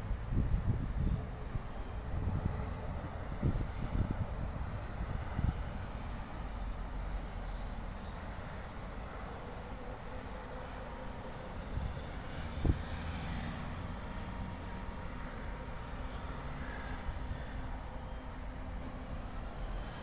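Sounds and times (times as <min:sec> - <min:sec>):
high-pitched squeal: 0:09.1 - 0:12.6, 0:14.1 - 0:18.2.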